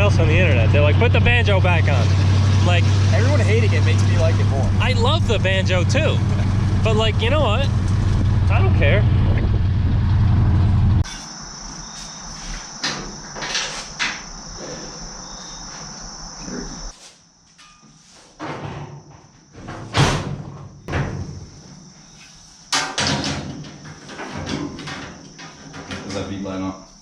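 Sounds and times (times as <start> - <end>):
knocks and clatters: 22.7 - 26.2.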